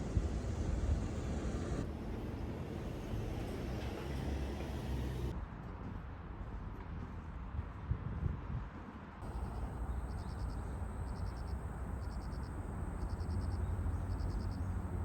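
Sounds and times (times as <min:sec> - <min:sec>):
insect chirping trills: 0:09.2 - 0:15.0.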